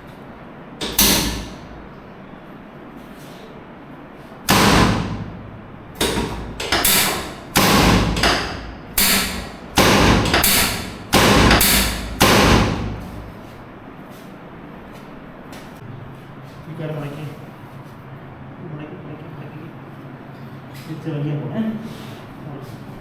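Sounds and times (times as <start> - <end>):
loud sharp knocks: 0.8 - 1.7, 4.5 - 13.4.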